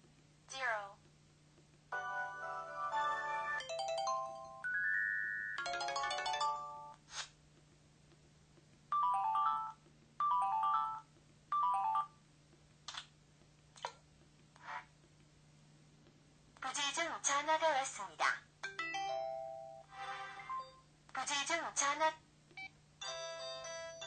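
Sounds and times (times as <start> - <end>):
phone ringtone chime: 2.0 - 6.9, 18.7 - 19.8, 23.0 - 24.0.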